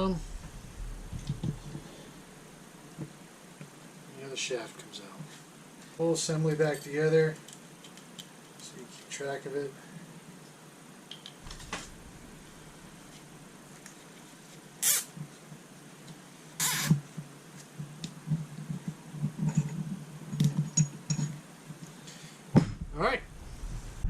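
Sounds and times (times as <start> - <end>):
short rasps: 14.8 - 15.2, 16.6 - 17.0.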